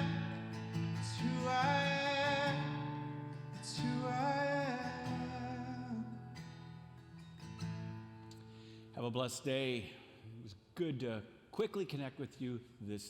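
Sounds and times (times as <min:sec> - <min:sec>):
person singing: 0:00.0 - 0:06.3
strummed acoustic guitar: 0:00.0 - 0:09.0.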